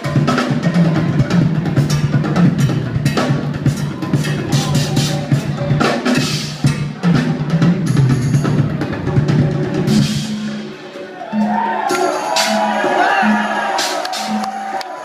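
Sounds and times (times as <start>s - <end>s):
drum kit solo: 0.0s - 14.8s.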